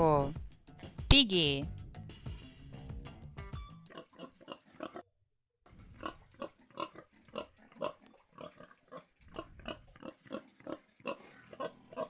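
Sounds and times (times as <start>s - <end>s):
pig grunting: 3.9s - 5.1s, 5.7s - 12.0s.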